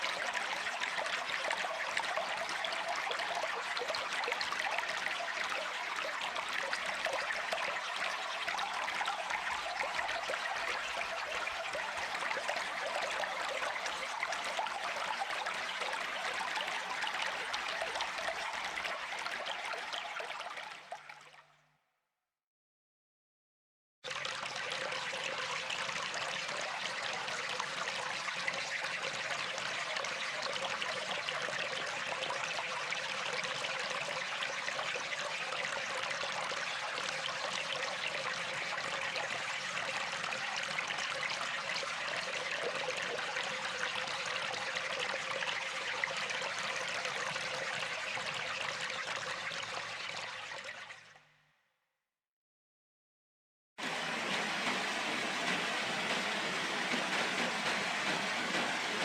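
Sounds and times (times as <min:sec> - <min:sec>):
river flowing: 0:53.8 - 0:59.0.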